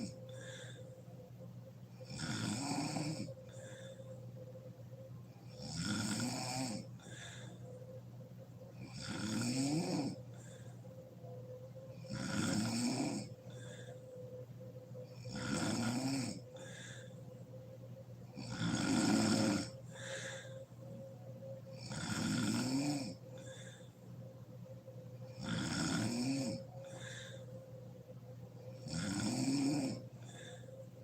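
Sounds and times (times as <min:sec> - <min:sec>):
woman snoring: 0:00.0 - 0:00.9, 0:02.0 - 0:04.2, 0:05.4 - 0:07.8, 0:08.7 - 0:10.8, 0:11.9 - 0:14.2, 0:15.0 - 0:17.2, 0:18.2 - 0:20.9, 0:21.6 - 0:23.9, 0:25.2 - 0:27.6, 0:28.5 - 0:31.0
soft breath: 0:00.0 - 0:02.0, 0:03.2 - 0:05.4, 0:06.8 - 0:09.0, 0:10.1 - 0:12.1, 0:13.2 - 0:15.4, 0:16.4 - 0:18.4, 0:19.7 - 0:21.8, 0:23.1 - 0:25.4, 0:26.5 - 0:28.9, 0:29.9 - 0:31.0.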